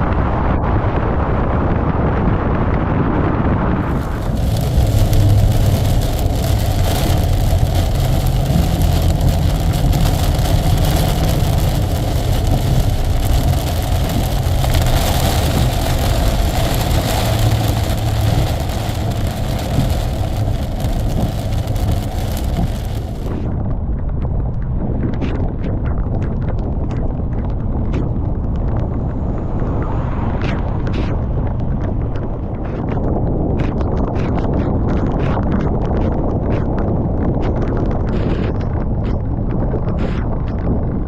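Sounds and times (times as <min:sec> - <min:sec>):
road and wind noise: 0:00.0 - 0:41.0
car engine drone: 0:03.6 - 0:33.5.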